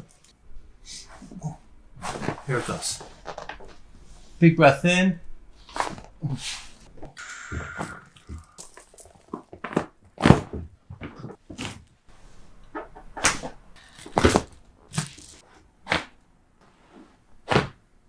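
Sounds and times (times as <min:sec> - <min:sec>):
back joints cracking: 0:07.0 - 0:11.9, 0:12.6 - 0:16.2.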